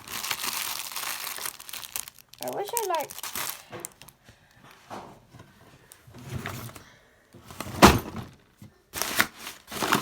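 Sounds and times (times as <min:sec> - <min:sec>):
objects being handled and shifted: 0:02.5 - 0:10.0.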